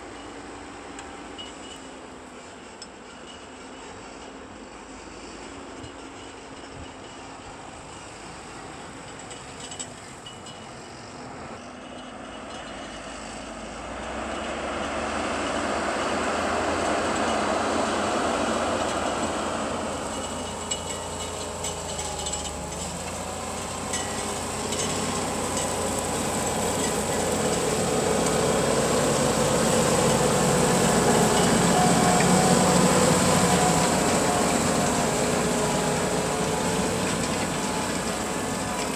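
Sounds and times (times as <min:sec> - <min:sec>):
tractor diesel engine under load: 0:07.4 - 0:38.9.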